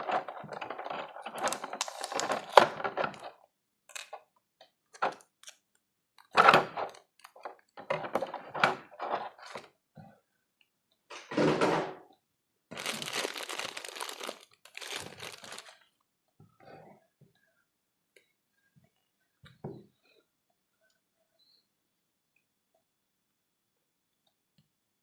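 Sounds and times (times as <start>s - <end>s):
packaging crinkling and rustling: 0.0s - 4.2s, 5.0s - 5.6s, 6.2s - 9.7s, 12.7s - 15.8s.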